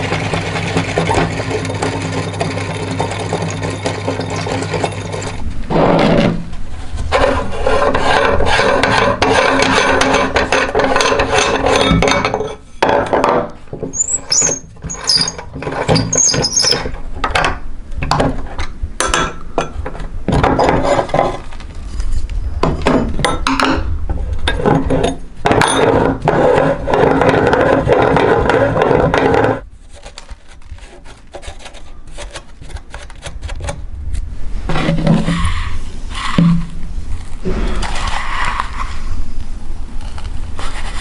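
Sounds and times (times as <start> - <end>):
short high squeaks: 13.9 - 16.8.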